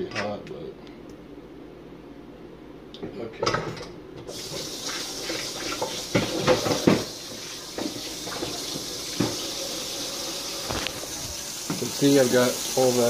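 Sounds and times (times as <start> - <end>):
tap running into sink: 4.3 - 9.6, 10.6 - 12.2
dishes knocking against sink: 6.1 - 8.6, 9.2 - 9.4.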